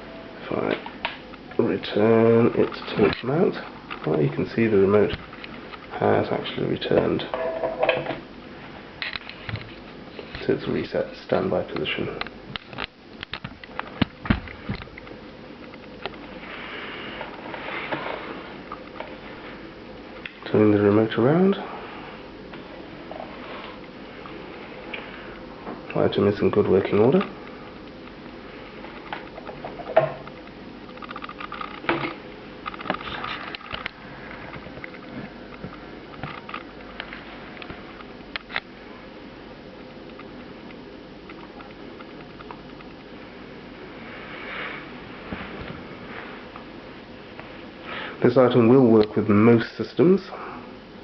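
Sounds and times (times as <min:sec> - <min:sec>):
soft breathy hiss: 0:16.3 - 0:18.6, 0:43.2 - 0:48.5.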